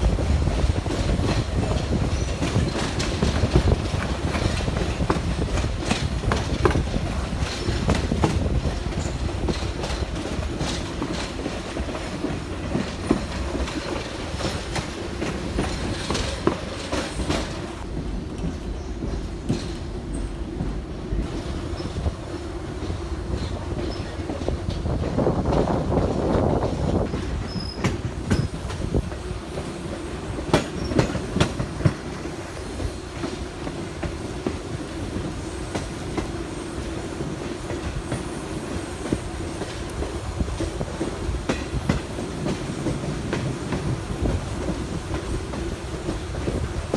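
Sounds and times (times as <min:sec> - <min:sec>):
railroad cars rumbling: 0:00.0 - 0:46.9
wheels clicking over rail joints: 0:00.2 - 0:46.9.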